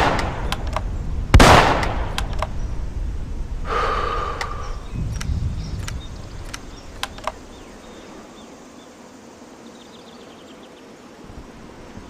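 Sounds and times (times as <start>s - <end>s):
sharp clicks: 0.0s - 2.6s, 4.3s - 7.5s
outdoor background: 0.0s - 12.0s.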